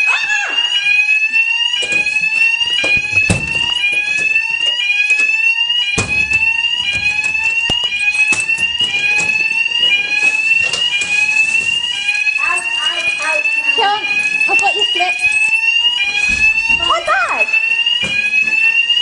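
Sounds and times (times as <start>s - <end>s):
fire alarm high tone: 0.0s - 19.0s
knocks and handling noises: 1.7s - 13.2s, 17.6s - 19.0s.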